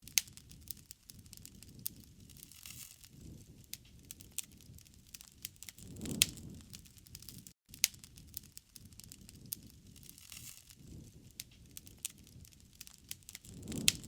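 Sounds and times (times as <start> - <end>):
wood fire crackling: 0.0 - 14.0
sharp pop of fire: 5.7 - 8.5, 13.2 - 14.0.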